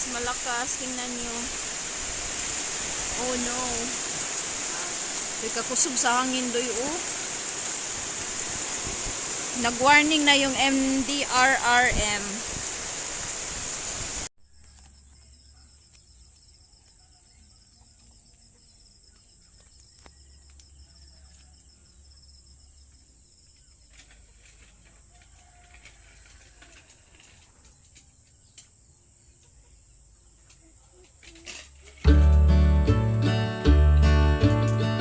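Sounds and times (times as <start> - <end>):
faint chirps and ticks: 14.4 - 31.5
high-pitched insect chorus: 14.4 - 32.0.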